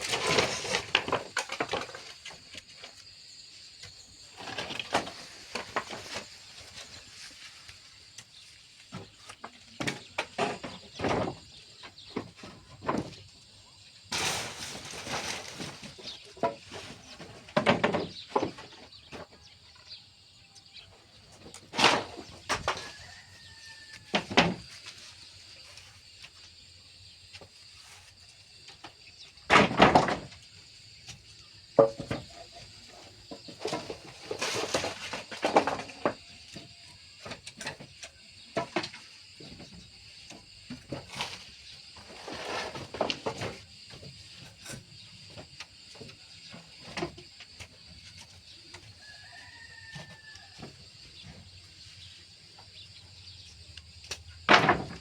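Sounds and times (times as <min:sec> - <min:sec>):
scraping noises: 0:00.0 - 0:03.0, 0:14.1 - 0:19.3, 0:40.8 - 0:48.6
knocks and bumps: 0:14.1 - 0:19.5, 0:21.4 - 0:23.2, 0:28.7 - 0:49.0, 0:54.0 - 0:55.0.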